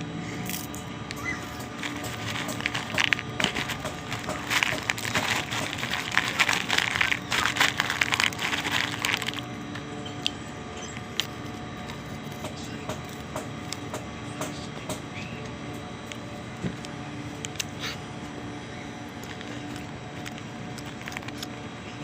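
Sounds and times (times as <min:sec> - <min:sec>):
low steady hum: 0:00.0 - 0:22.0
popcorn crunching: 0:00.4 - 0:13.9, 0:19.0 - 0:22.0.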